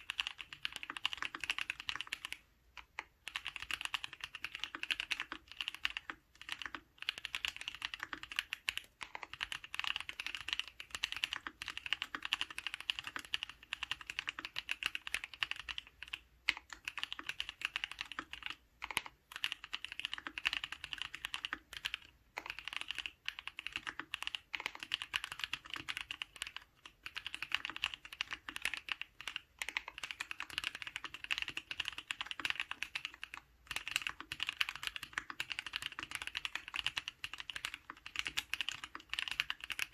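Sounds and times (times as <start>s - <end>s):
mechanical keyboard keystroke clacks: 0.0s - 39.9s.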